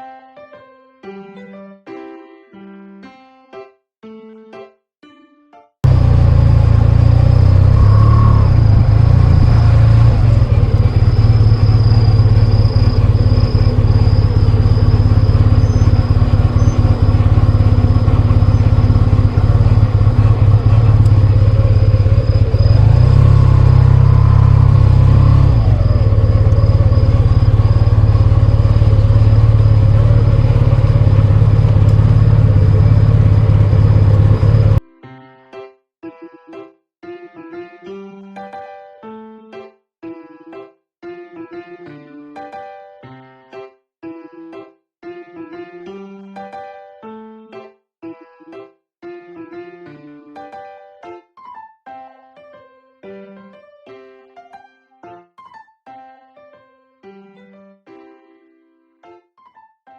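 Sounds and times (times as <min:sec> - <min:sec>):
scooter engine droning: 0:05.8 - 0:34.8.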